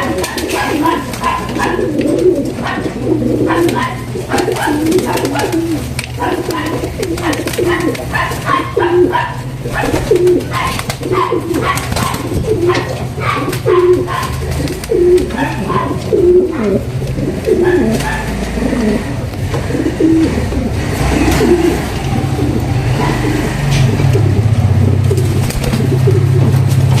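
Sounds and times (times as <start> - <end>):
pigeons cooing: 0.0 - 27.0
low hum: 18.3 - 27.0.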